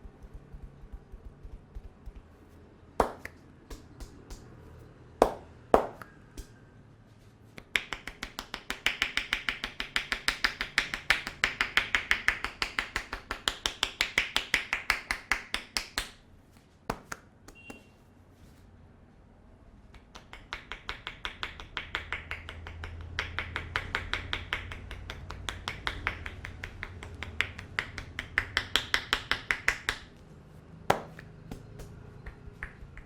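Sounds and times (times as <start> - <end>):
fast clapping strikes: 3.0 - 4.5, 5.2 - 6.5, 7.6 - 16.2, 20.0 - 30.1, 30.9 - 33.0
hands slapping a head: 3.0 - 4.6, 5.2 - 6.5, 7.6 - 17.9, 19.9 - 30.2, 30.9 - 33.0.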